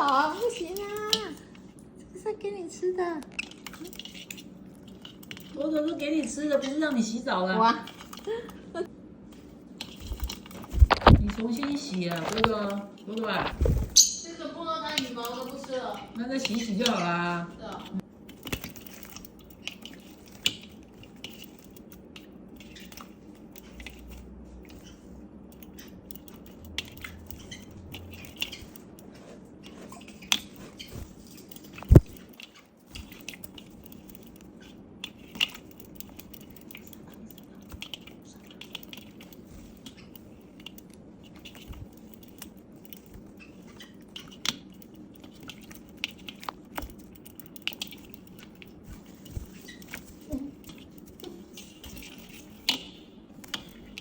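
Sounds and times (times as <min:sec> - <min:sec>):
faint steady hum: 0:00.0 - 0:54.0
bird beak crunching food: 0:03.2 - 0:07.0, 0:17.8 - 0:54.0.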